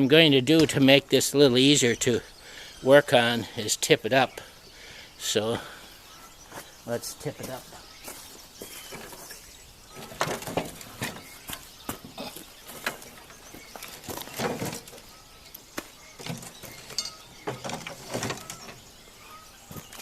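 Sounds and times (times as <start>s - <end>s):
knocks clunks and scrapes: 8.7s - 15.2s, 15.8s - 20.0s.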